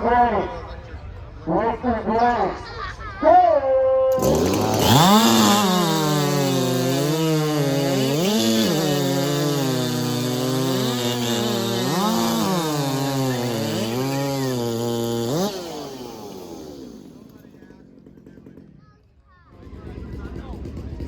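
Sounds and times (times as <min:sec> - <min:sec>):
chainsaw cutting wood: 0:04.1 - 0:19.9.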